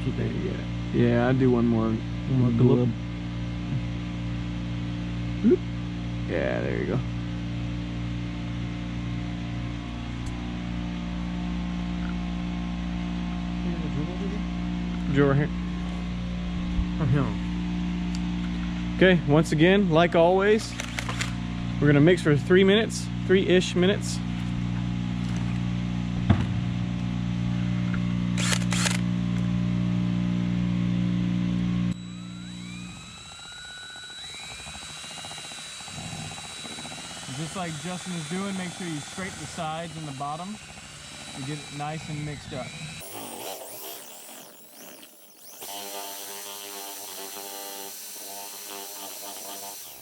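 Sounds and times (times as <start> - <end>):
power drill mixing resin: 20.4 - 21.4, 23.7 - 25.7, 28.4 - 29.5, 31.6 - 50.0.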